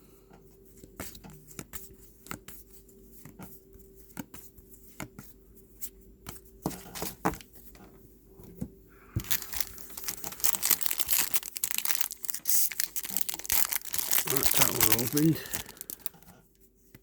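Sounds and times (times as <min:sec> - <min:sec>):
wrapper clicking: 0:09.2 - 0:16.3
wrapper crinkling and tearing: 0:09.2 - 0:16.3.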